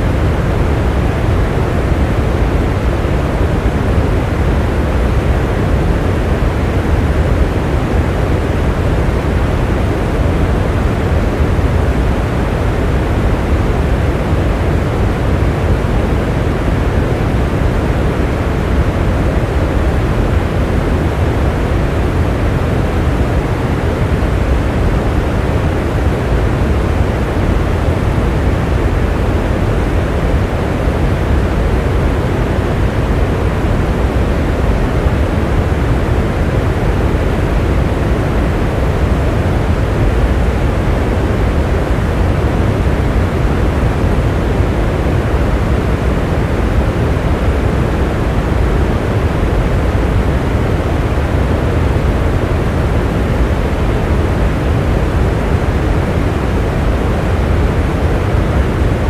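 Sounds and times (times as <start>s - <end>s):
steady rain: 0.0s - 59.0s.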